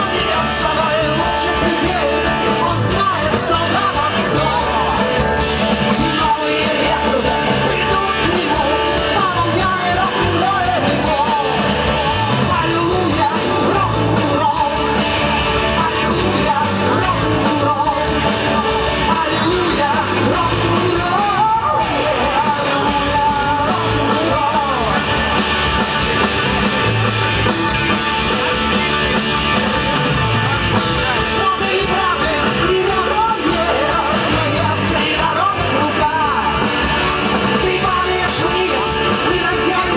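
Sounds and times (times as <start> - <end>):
rock and roll song: 0.0 - 39.9.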